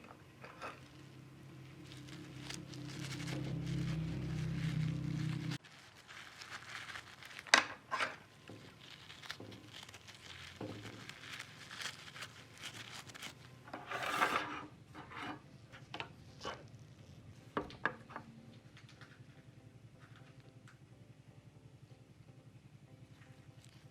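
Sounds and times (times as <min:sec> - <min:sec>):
scraping rub: 0:00.0 - 0:18.2.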